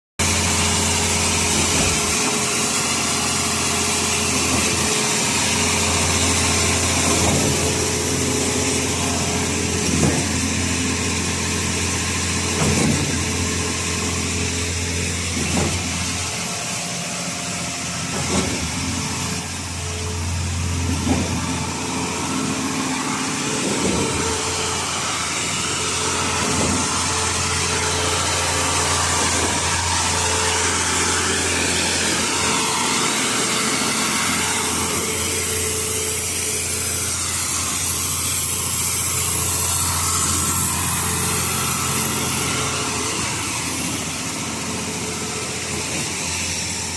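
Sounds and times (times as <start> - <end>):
concrete pump diesel engine running: 0.2 - 46.9
pump cylinder knocks: 7.0 - 7.8, 12.6 - 13.3, 15.4 - 16.2, 26.4 - 27.0.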